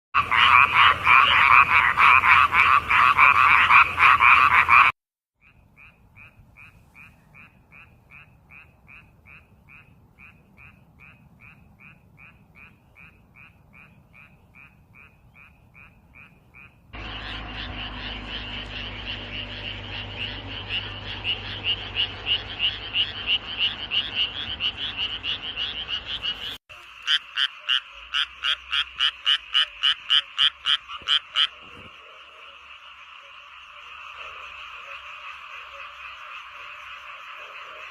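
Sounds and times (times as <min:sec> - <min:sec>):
frog calls: 0:00.2 - 0:37.9
frog chorus: 0:00.2 - 0:37.9.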